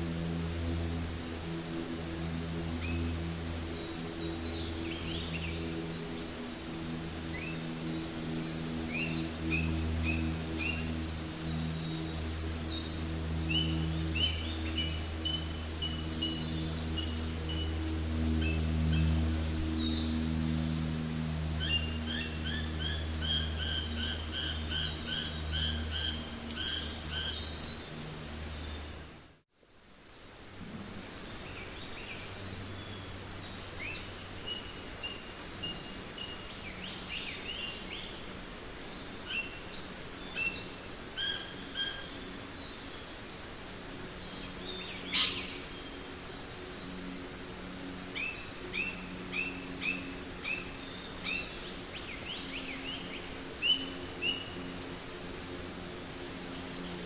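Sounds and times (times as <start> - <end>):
low steady hum: 0.0 - 57.0
birds chirping and whistling: 48.2 - 55.0.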